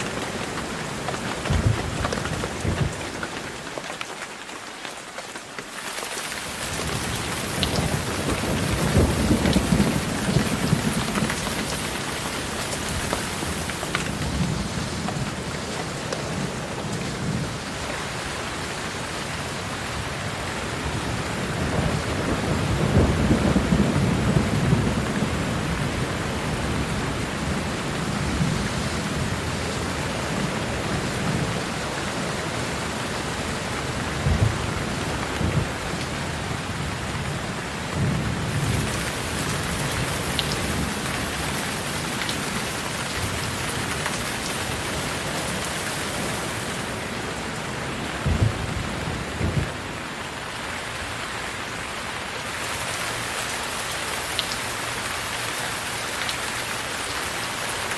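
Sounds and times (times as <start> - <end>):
steady rain: 0.0 - 57.9
rolling thunder: 6.8 - 15.3, 38.0 - 50.0.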